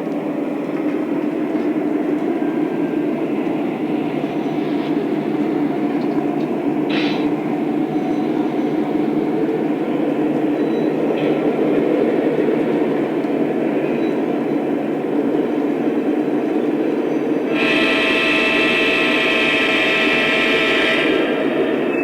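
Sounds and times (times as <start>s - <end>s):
model train rumbling on track: 0.0s - 22.0s
electronic train horn: 17.5s - 22.0s.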